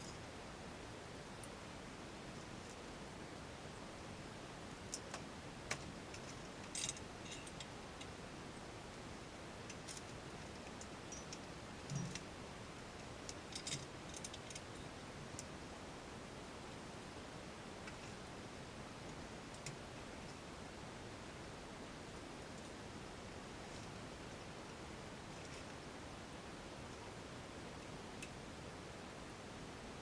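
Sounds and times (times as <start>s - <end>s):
small metal parts clicking: 4.9s - 8.1s, 9.7s - 12.2s, 13.3s - 15.5s
metal parts jangling: 6.1s - 7.7s, 13.4s - 14.9s.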